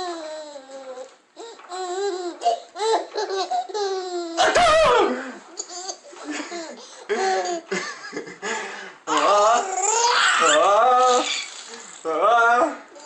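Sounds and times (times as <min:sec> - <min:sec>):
baby laughing and squealing: 0:09.6 - 0:11.8.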